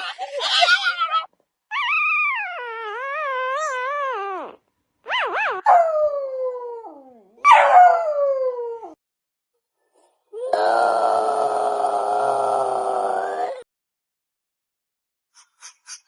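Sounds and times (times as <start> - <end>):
dog howling: 1.7 - 9.0.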